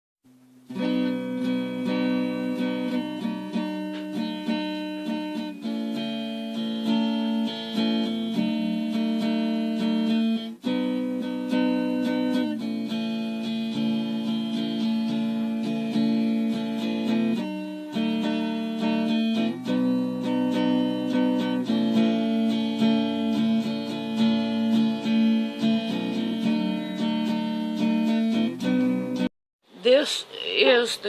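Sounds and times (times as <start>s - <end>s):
acoustic guitar music: 0.3s - 31.0s.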